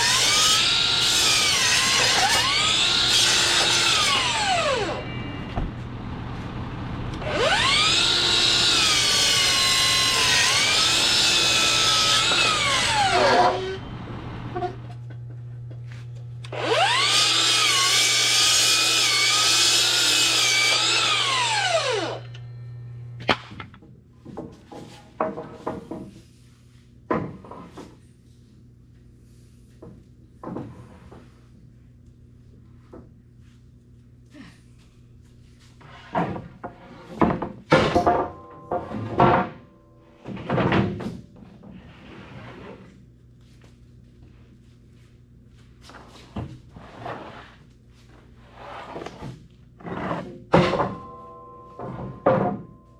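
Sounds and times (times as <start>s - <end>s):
band saw blade whine: 7.2s - 14.8s, 16.4s - 23.2s.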